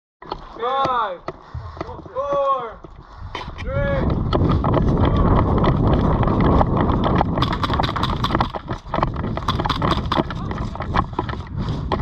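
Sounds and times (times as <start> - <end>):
handling rumble: 1.3 - 12.0
heavy wind on microphone: 1.4 - 12.0
sharp clicks and knocks: 4.3 - 12.0.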